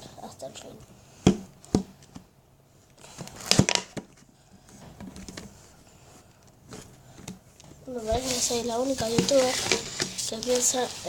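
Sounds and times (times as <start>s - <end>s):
clicks and crinkling: 2.9s - 5.6s.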